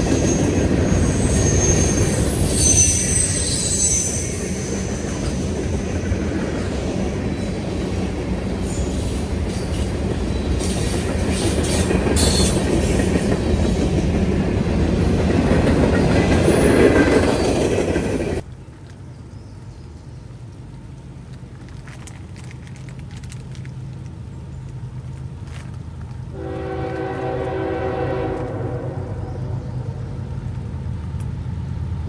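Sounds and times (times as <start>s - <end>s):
high wheel squeal: 0.0s - 7.8s, 8.6s - 12.9s
train wheels rumbling on rail: 0.0s - 18.5s, 19.6s - 32.0s.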